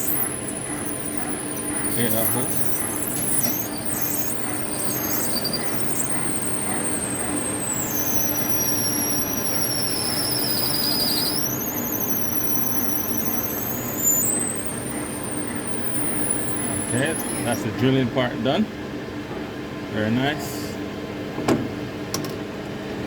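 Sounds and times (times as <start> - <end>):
drill bit squealing in metal: 0.0 - 17.6
lathe humming: 0.0 - 17.6.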